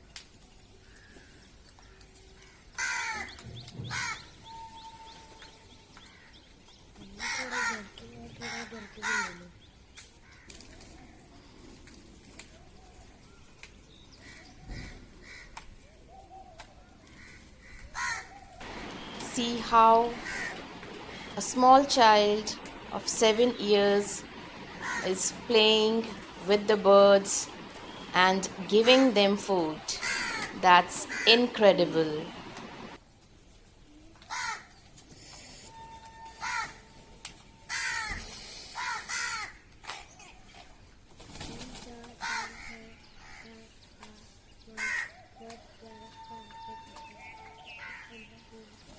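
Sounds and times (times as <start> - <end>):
crows cawing: 0.8 - 4.3, 7.2 - 9.6, 10.2 - 10.7, 14.2 - 15.6, 17.1 - 21.4, 24.0 - 26.5, 27.2 - 33.0, 34.3 - 34.7, 36.3 - 36.9, 37.7 - 39.7, 42.2 - 43.6, 44.8 - 45.2, 47.6 - 48.2
birds calling: 0.8 - 33.0, 37.7 - 40.8, 42.1 - 48.9.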